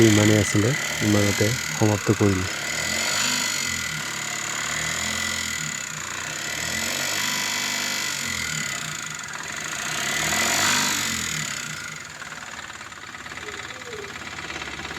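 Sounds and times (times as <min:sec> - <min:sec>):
engine idling: 0:00.0 - 0:02.8, 0:11.6 - 0:14.9.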